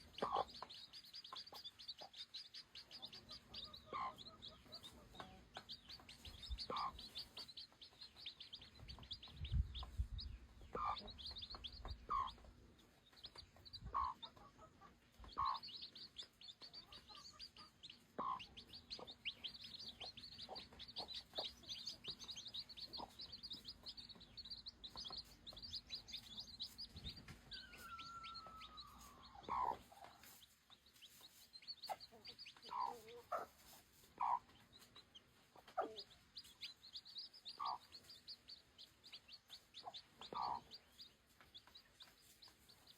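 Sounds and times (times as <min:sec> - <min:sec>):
baby chicks peeping: 0:00.0 - 0:42.9
chicken calls: 0:13.4 - 0:30.4.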